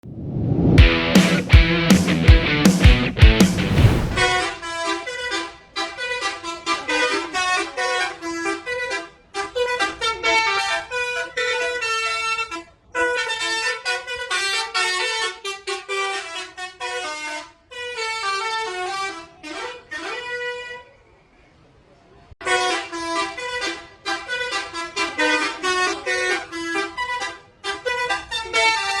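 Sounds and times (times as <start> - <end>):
multi-tone air horn tune: 22.4 - 29.0.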